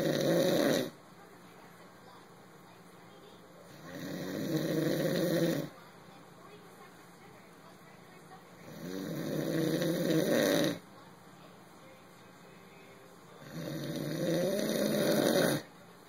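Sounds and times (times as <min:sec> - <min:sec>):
person snoring: 0:00.0 - 0:01.0, 0:03.7 - 0:05.7, 0:08.7 - 0:10.8, 0:13.4 - 0:15.7.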